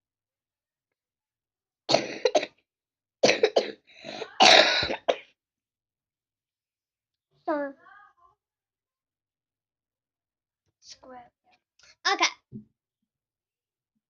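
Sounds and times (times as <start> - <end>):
child coughing: 1.9 - 2.6, 3.2 - 5.4.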